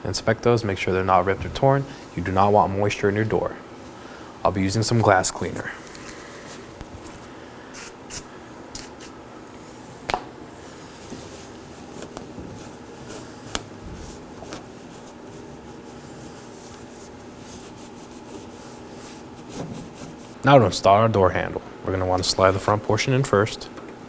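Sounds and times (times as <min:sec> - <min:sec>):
wiping and handling sounds: 0:04.7 - 0:20.5.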